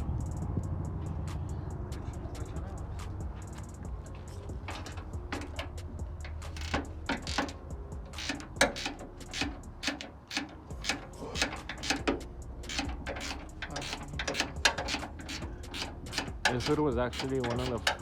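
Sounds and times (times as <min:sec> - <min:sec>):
metallic tool clicks and clinks: 0:04.7 - 0:18.0.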